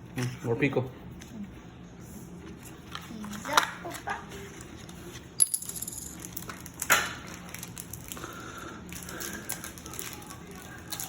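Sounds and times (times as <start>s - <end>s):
foil wrapper crinkling: 6.2s - 11.0s.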